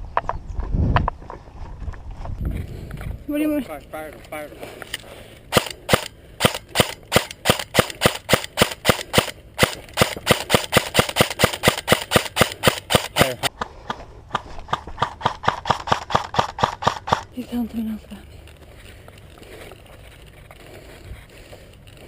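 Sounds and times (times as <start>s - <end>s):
airsoft rifle shots cracking: 5.5s - 13.5s.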